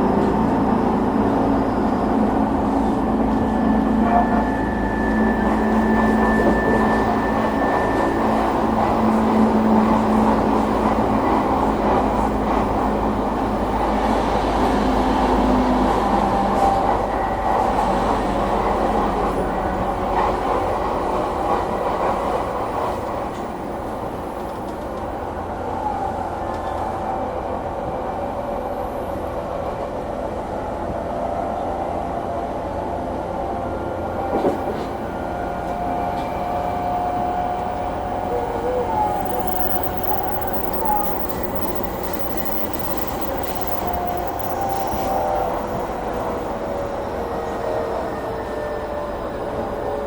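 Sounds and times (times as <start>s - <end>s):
train motor humming whine: 2.6s - 14.0s, 37.2s - 48.3s.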